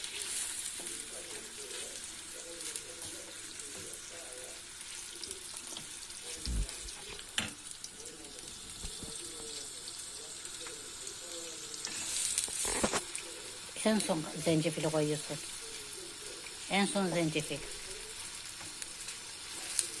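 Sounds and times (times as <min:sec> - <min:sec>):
fruit sizzling in butter: 0:00.0 - 0:20.0.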